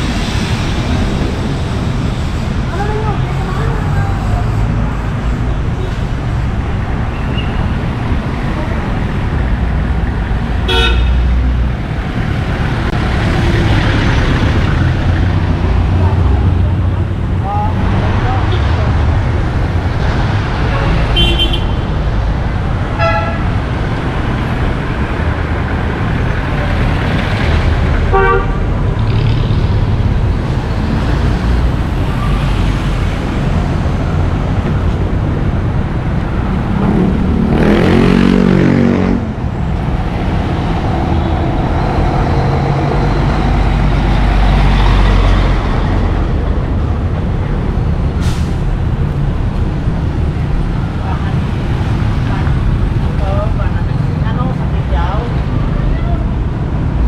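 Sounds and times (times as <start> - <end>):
busy road traffic: 0.0 - 57.0
vehicle horn toots: 10.7 - 11.3, 21.1 - 21.8, 23.0 - 23.5, 28.1 - 28.6.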